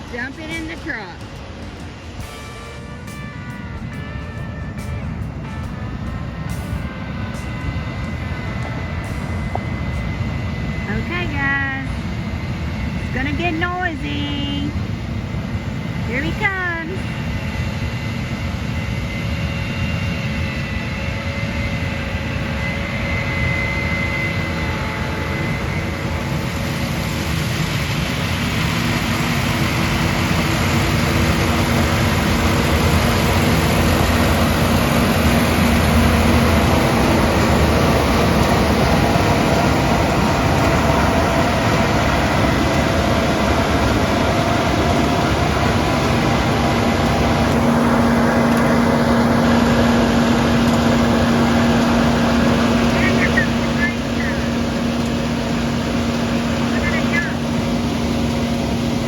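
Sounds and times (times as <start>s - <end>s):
combine harvester roaring: 0.0s - 59.0s.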